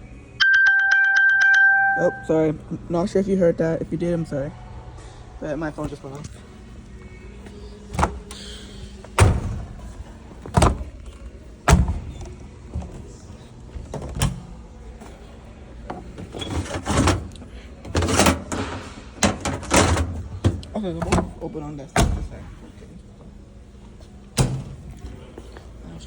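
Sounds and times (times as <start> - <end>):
appliance doors thunking shut: 7.9 - 13.2, 13.8 - 14.6, 15.9 - 22.6, 24.4 - 25.0.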